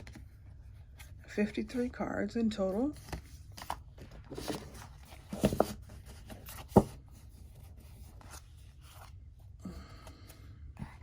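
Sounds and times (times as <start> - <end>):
cards rustling: 2.8 - 9.2.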